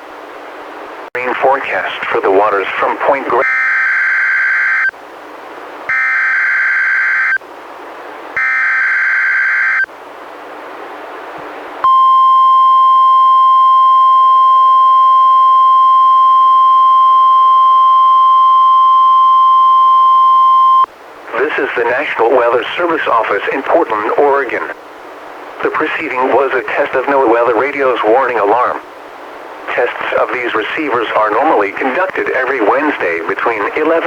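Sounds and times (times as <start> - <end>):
steady warning alarm tone: 3.4 - 4.9, 5.9 - 7.4, 8.4 - 9.9.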